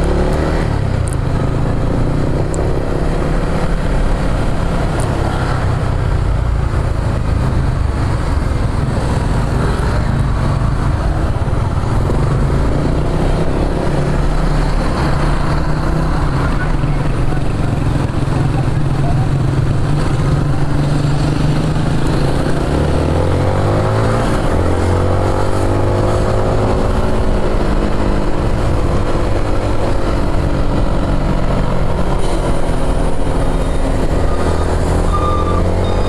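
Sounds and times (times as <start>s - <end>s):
motorcycle engine revving: 0.0s - 36.0s
wind rushing over microphone: 19.6s - 35.4s.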